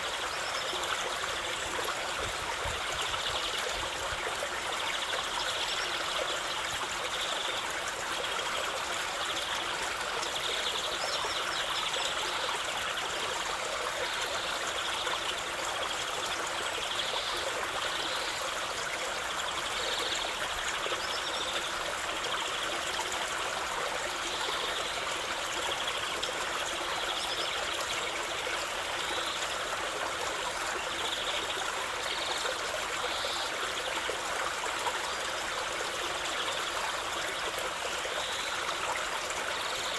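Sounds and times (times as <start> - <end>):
stream babbling over stones: 0.0 - 39.9.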